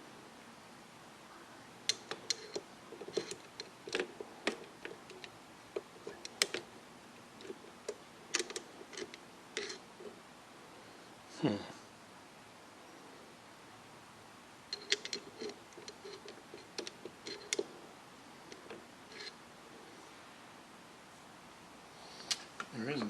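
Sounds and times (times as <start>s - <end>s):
small metal parts clicking: 1.9s - 6.7s, 7.4s - 9.9s, 14.7s - 17.8s, 18.5s - 19.4s.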